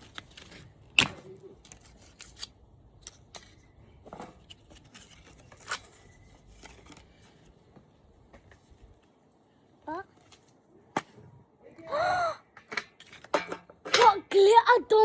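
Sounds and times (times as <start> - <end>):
plastic packaging clicks and crinkles: 0.0 - 3.6.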